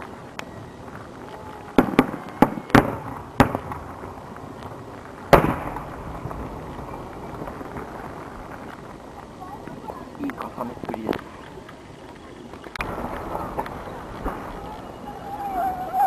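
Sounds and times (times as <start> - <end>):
firework shells bursting: 0.0 - 10.5.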